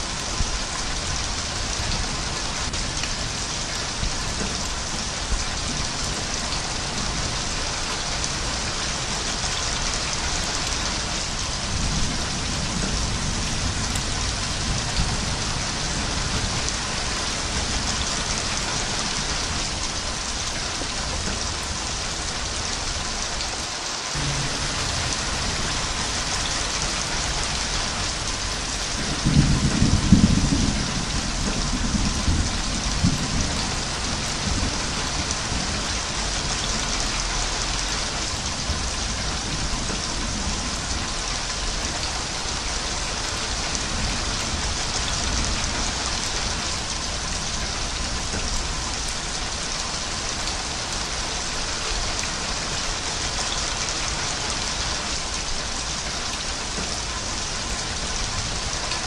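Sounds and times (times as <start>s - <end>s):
heavy rain falling: 0.0s - 59.0s
thunder rumbling: 24.2s - 41.2s.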